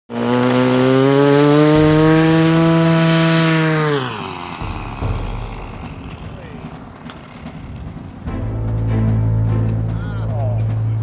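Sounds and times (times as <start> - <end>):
model airplane engine running: 0.1 - 8.2.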